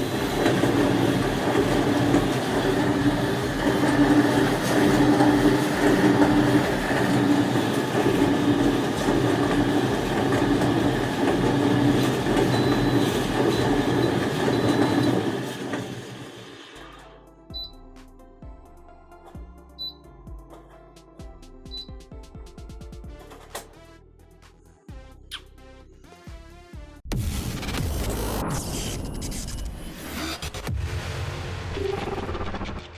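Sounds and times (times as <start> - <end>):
tumble dryer rumbling: 0.0 - 17.0.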